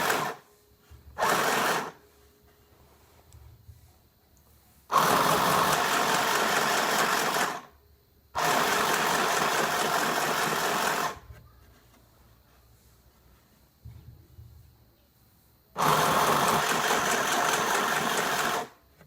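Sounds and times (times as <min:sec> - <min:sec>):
sewing machine running: 0:00.0 - 0:00.4, 0:01.2 - 0:02.0, 0:04.9 - 0:07.7, 0:08.4 - 0:11.2, 0:15.8 - 0:18.8.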